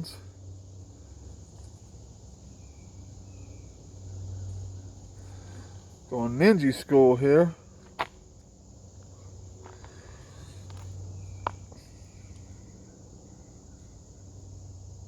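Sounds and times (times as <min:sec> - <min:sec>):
insects droning: 0:00.0 - 0:15.0.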